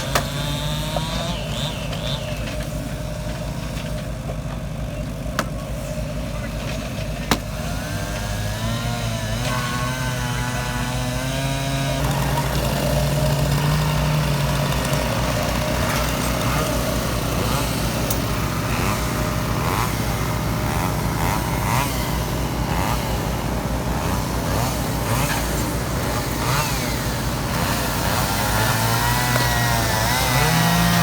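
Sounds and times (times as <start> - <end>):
chainsaws cutting logs: 0.0 - 31.0.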